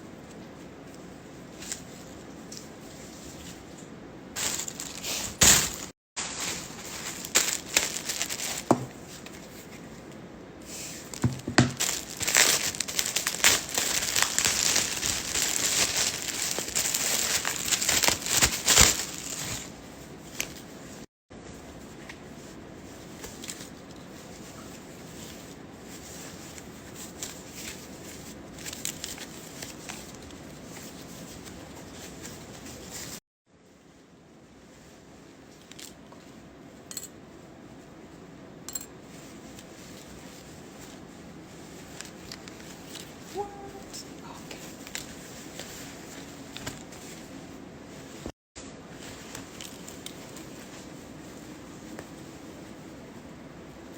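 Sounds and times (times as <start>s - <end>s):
packaging crinkling: 4.4s - 9.3s, 11.0s - 19.8s.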